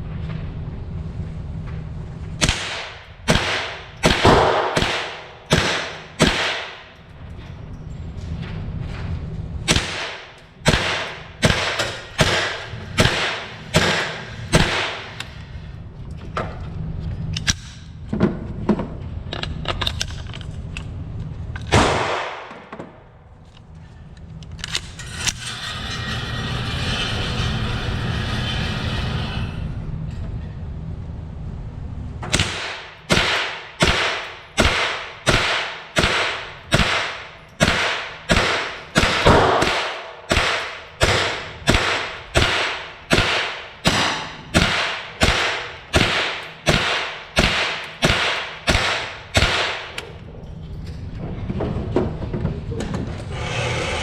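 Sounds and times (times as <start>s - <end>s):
steady low rumble: 0.0s - 54.0s
rifle shots cracking: 2.4s - 6.8s, 9.7s - 15.2s, 21.7s - 22.7s, 32.3s - 50.0s.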